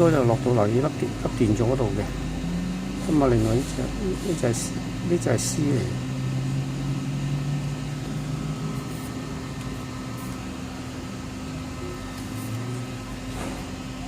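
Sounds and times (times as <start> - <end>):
low mechanical hum with hiss: 0.0 - 14.0.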